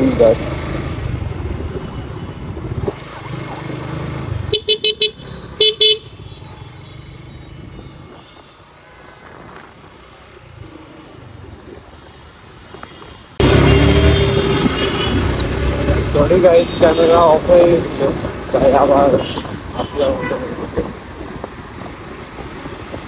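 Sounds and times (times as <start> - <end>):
vehicle horn short beeps: 13.4 - 15.5
motorcycle engine rumble: 13.4 - 23.0.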